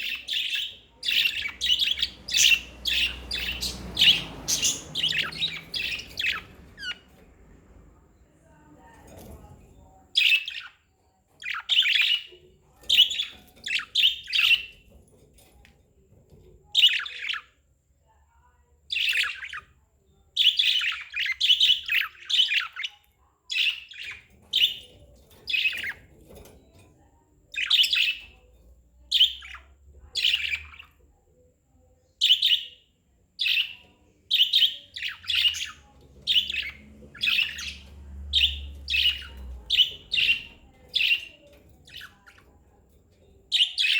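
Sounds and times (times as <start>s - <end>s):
budgerigars chirping: 0.0s - 7.2s, 11.4s - 14.9s, 16.8s - 17.5s, 18.9s - 19.7s, 20.4s - 26.1s, 27.6s - 28.4s, 29.1s - 31.0s, 32.2s - 32.8s, 33.4s - 42.5s, 43.5s - 43.9s.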